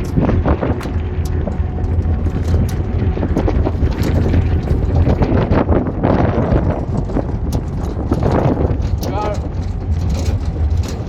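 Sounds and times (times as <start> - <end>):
knocks and rattles: 0.0 - 11.0
vehicle engine drone: 0.0 - 11.0
wind buffeting microphone: 0.0 - 11.0.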